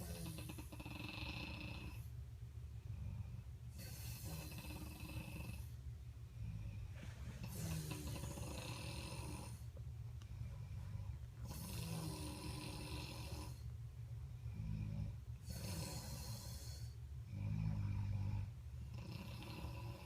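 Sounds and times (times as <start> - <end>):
rasping snoring: 0.0 - 2.1, 2.9 - 5.7, 6.4 - 9.7, 10.4 - 13.7, 14.4 - 20.0
steady low rumble: 1.9 - 15.6.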